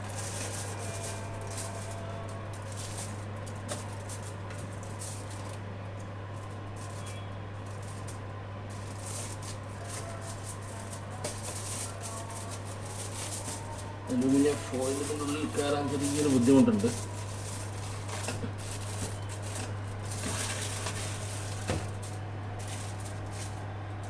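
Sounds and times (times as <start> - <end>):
aluminium foil crinkling: 0.0 - 24.0.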